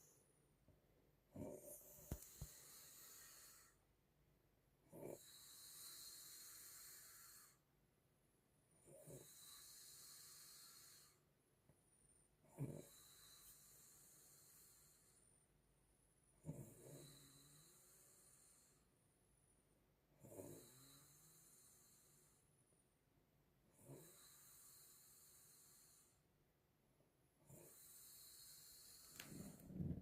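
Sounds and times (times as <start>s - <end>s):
woman snoring: 4.9s - 7.6s, 12.6s - 15.0s, 16.4s - 18.8s, 20.2s - 22.2s, 27.5s - 30.0s.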